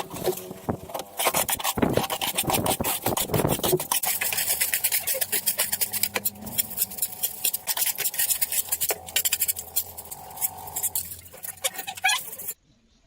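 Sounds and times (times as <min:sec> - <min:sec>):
scratching and clinking: 0:00.0 - 0:12.6.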